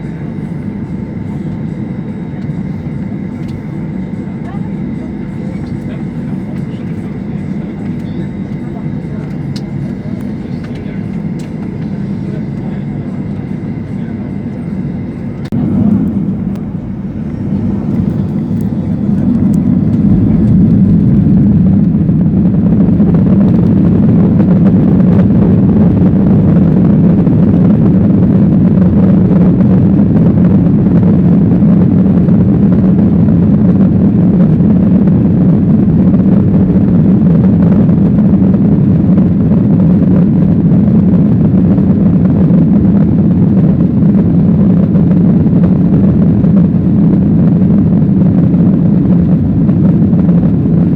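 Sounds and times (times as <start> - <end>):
jet engines spooling up: 0.0 - 31.2
jet engine low rumble: 0.0 - 50.9.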